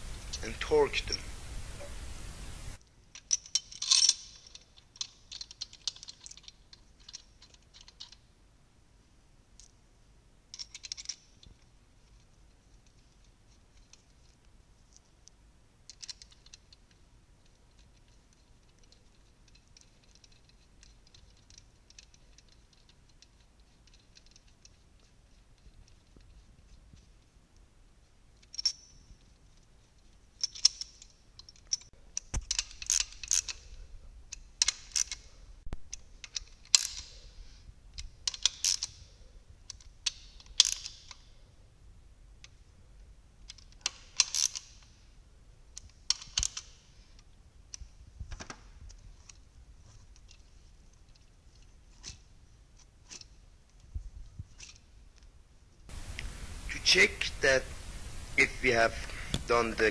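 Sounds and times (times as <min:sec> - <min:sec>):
wrench clicking on bolts: 0:30.4 - 0:33.7, 0:34.3 - 0:35.2, 0:35.9 - 0:37.2, 0:38.0 - 0:39.0, 0:39.7 - 0:41.2, 0:43.5 - 0:44.9, 0:45.8 - 0:46.8.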